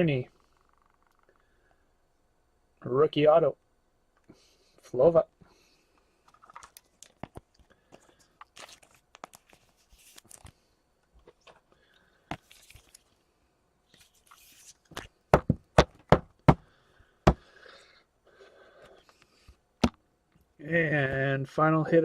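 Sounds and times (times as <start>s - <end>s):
cards rustling and sliding: 6.6s - 10.7s, 12.3s - 13.2s, 13.9s - 15.2s.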